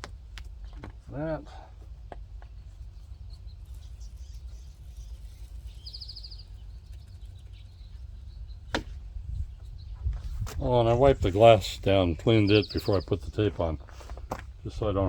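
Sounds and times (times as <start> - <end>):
low outdoor rumble: 0.0 - 15.0
bird trill: 2.5 - 8.8, 12.3 - 13.3.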